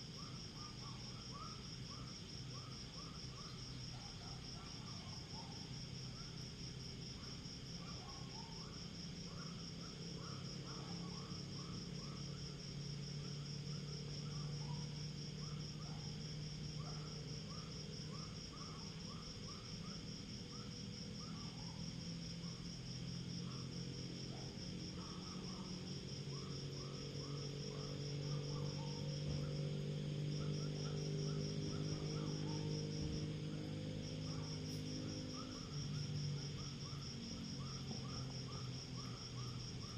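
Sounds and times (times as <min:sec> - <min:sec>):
crickets trilling: 0:00.0 - 0:39.9
low insect chirps: 0:00.0 - 0:39.9.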